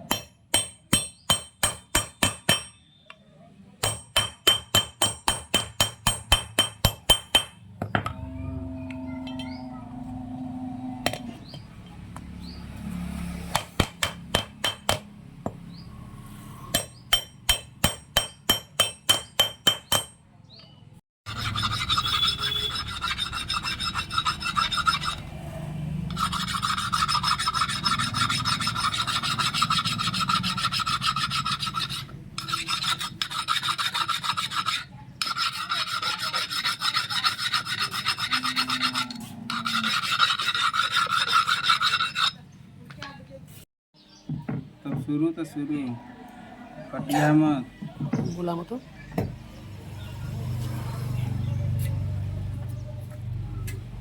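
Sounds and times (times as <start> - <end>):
metallic rasping: 3.8 - 11.7, 21.3 - 42.5.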